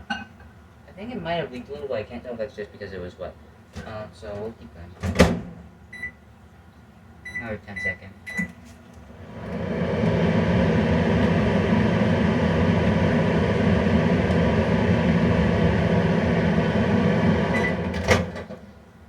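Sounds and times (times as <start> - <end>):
microwave oven humming: 5.1 - 19.0.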